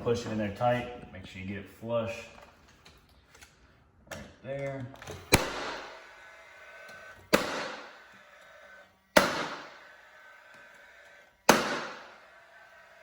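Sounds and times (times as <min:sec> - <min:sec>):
nail gun firing: 0:05.1 - 0:06.1, 0:06.8 - 0:08.3, 0:09.1 - 0:10.8, 0:11.4 - 0:13.0.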